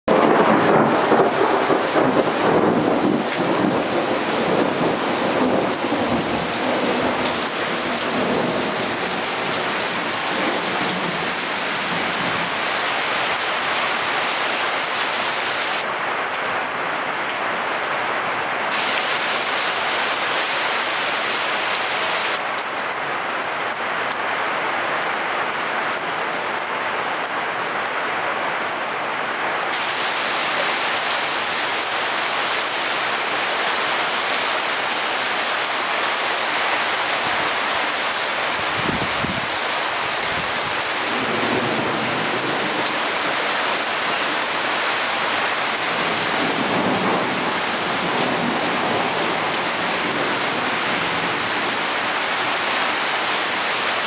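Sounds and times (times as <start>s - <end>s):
steady rain falling: 0.0s - 54.0s
thunder rumbling: 0.1s - 12.6s.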